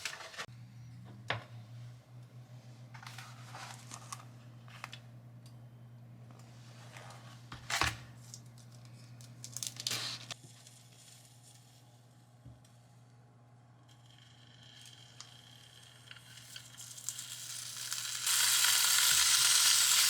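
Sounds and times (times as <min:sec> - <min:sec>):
low hum: 0:00.5 - 0:07.3
rustling and crinkling handling: 0:02.9 - 0:05.0.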